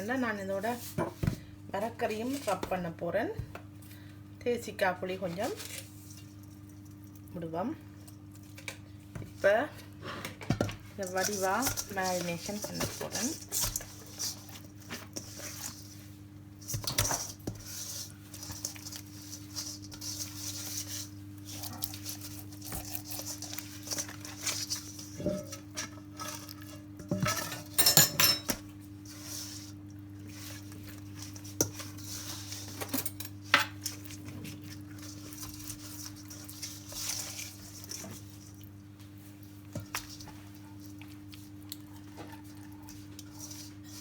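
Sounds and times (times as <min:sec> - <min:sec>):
low electrical hum: 0:00.0 - 0:44.0
dish and utensils clinking: 0:27.1 - 0:28.6.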